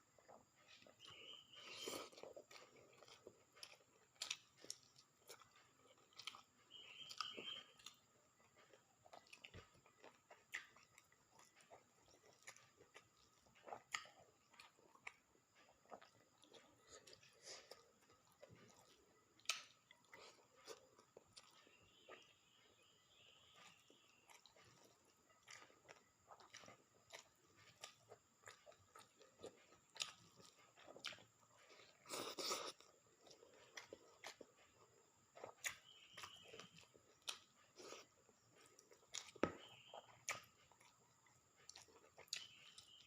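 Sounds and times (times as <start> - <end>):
person chewing: 0.0 - 43.0.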